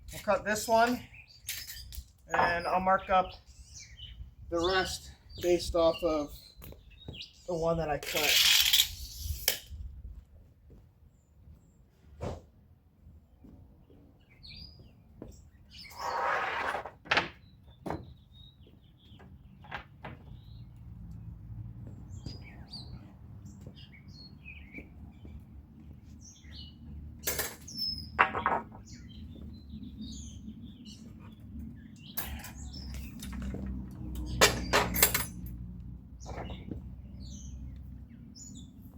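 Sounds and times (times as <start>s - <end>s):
birds chirping: 0.0s - 12.2s, 12.9s - 38.9s
objects knocking and scraping: 27.2s - 28.9s, 32.2s - 35.5s.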